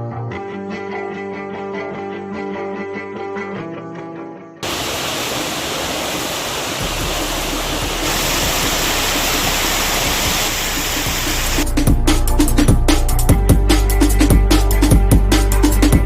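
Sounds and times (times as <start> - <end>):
waterfall roaring: 4.6 - 11.6.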